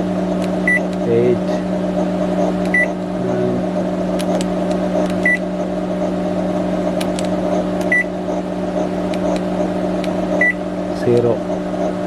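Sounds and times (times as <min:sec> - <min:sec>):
microwave oven humming: 0:00.0 - 0:12.0
key clicks: 0:04.1 - 0:05.5, 0:07.0 - 0:08.0, 0:09.1 - 0:10.2.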